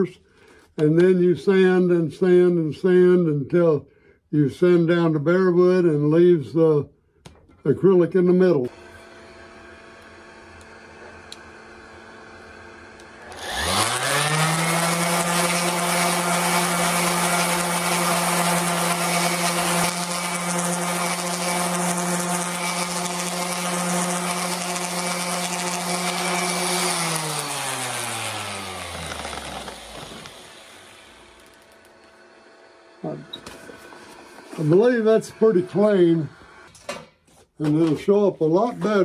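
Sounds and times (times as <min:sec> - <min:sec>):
electric sander running: 0:08.6 - 0:36.8.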